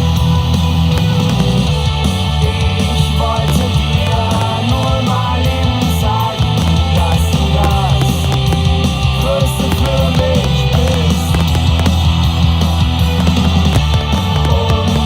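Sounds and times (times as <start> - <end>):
loud rock music: 0.0 - 15.0.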